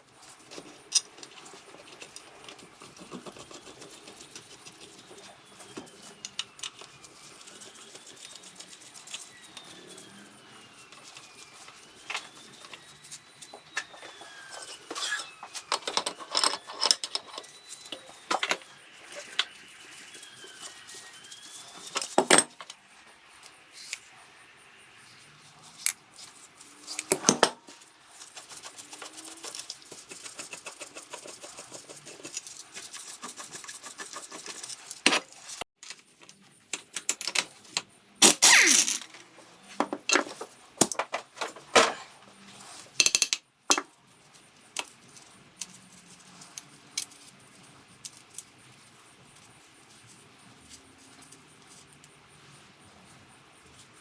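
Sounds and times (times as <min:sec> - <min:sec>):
metal tools clinking and clanking: 0:10.9 - 0:19.5, 0:40.1 - 0:42.2, 0:43.0 - 0:44.0.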